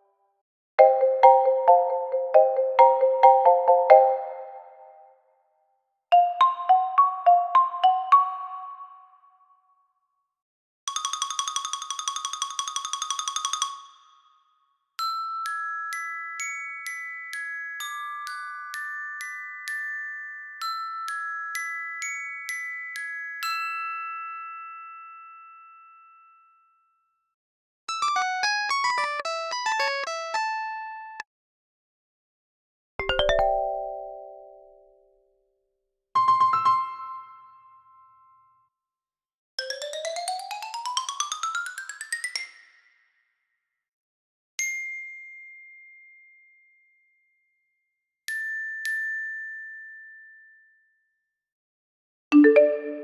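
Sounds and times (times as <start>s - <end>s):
tuned mallet percussion: 33.0s - 34.8s, 52.4s - 53.0s.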